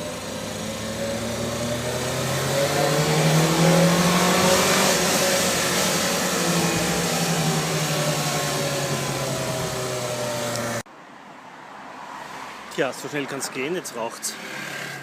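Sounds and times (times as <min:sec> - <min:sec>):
car engine running: 0:00.0 - 0:10.8.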